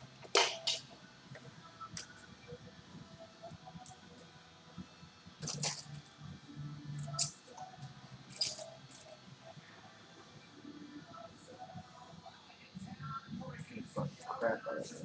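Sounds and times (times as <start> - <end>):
handling noises: 0.0 - 2.3, 5.4 - 6.0, 8.3 - 9.1.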